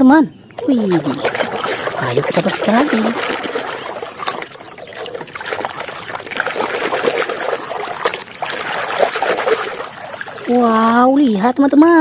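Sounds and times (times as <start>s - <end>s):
water trickling and splashing: 0.6s - 12.0s.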